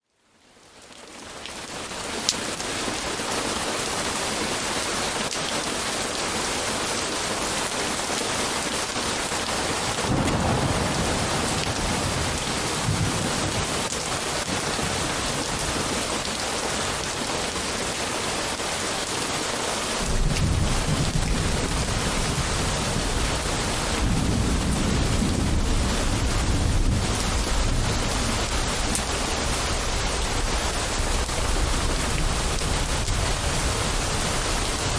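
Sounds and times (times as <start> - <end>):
steady rain: 0.0 - 34.9
rolling thunder: 10.0 - 16.0, 20.0 - 34.9.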